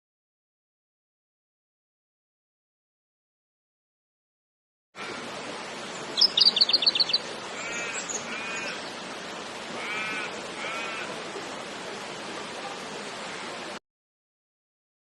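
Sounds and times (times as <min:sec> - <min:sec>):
nasal bird calls: 0:06.0 - 0:09.0, 0:09.8 - 0:11.1
high bird trill: 0:06.2 - 0:08.8.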